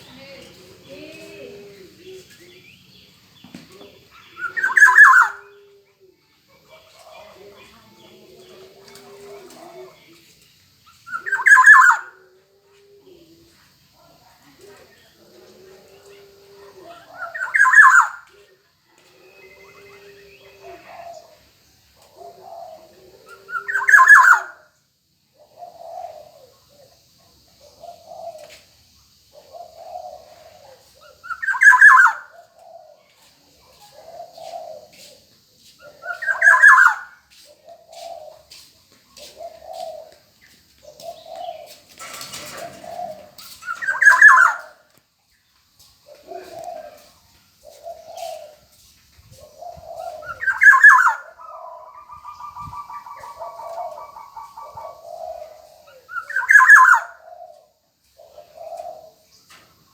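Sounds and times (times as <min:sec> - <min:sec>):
oriole loud calls: 0:49.4 - 0:57.6.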